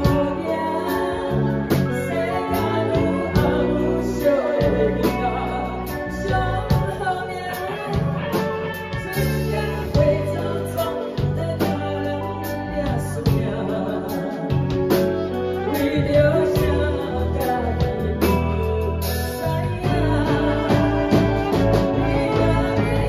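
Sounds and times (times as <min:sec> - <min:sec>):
singing over instruments: 0:09.0 - 0:23.0.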